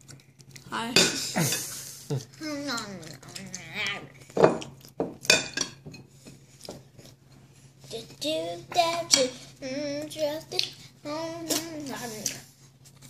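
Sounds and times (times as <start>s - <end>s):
child singing: 7.9s - 12.4s.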